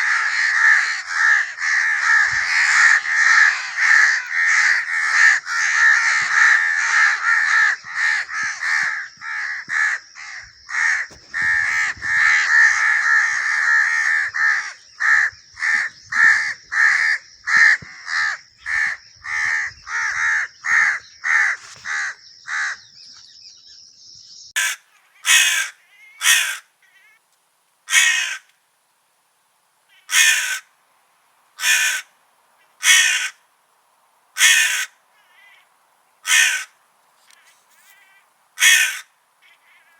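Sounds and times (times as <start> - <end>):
crows cawing: 0.0 - 23.0, 24.6 - 27.2, 27.9 - 28.5, 29.9 - 30.7, 31.6 - 33.4, 34.4 - 39.9.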